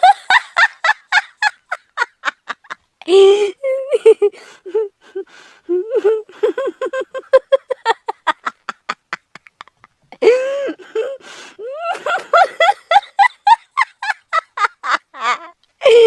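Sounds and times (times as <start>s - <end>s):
woman laughing: 0.0s - 16.0s
woman drawing breath: 10.2s - 11.6s.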